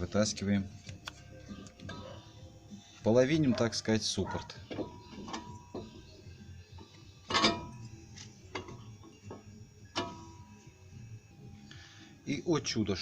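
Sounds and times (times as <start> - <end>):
metal clinks and knocks: 4.3 - 10.6.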